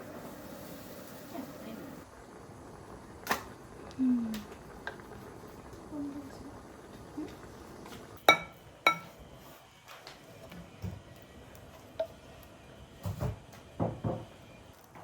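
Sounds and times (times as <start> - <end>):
dishes and glassware clinking: 8.2 - 9.2.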